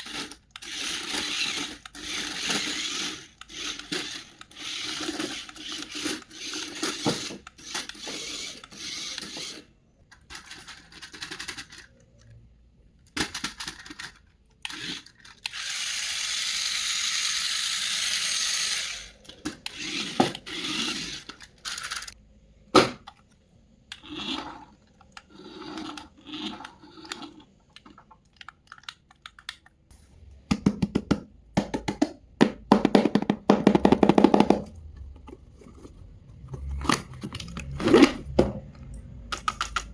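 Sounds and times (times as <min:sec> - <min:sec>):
toy packaging rustling: 0:00.0 - 0:12.1, 0:13.0 - 0:22.2, 0:33.8 - 0:38.4.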